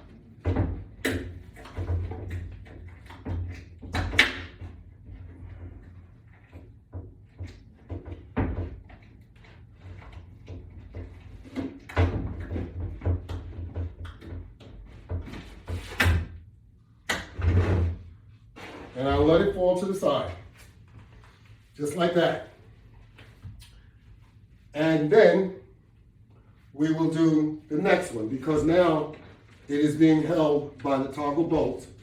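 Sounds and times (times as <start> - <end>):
knocks and scrapes of fitting: 0.0 - 16.2, 17.3 - 19.5.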